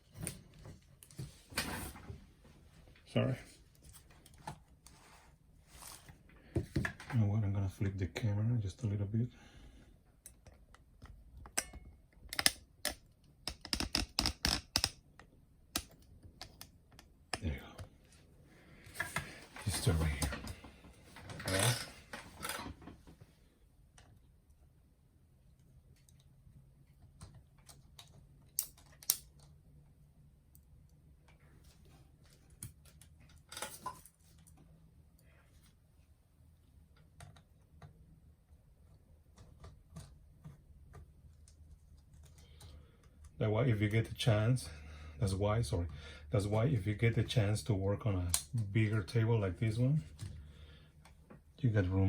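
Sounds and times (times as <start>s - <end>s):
plastic parts clicking and tapping: 10.2s - 17.9s.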